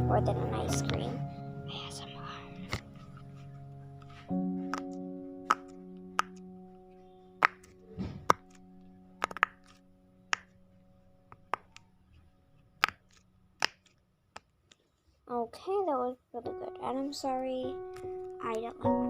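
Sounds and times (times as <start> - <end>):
held musical chord: 0.0 - 9.2
fidget toy pops and clicks: 5.5 - 6.4, 7.4 - 8.6, 9.2 - 10.6, 12.8 - 13.0, 13.6 - 14.5.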